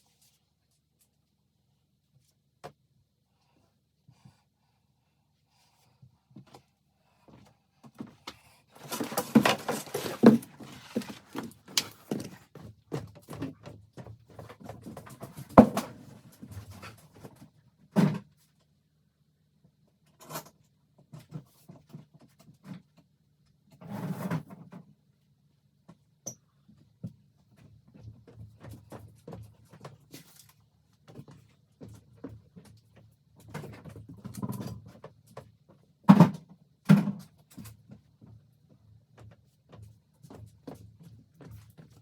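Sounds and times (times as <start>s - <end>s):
scraping and rustling: 8.8s - 12.4s.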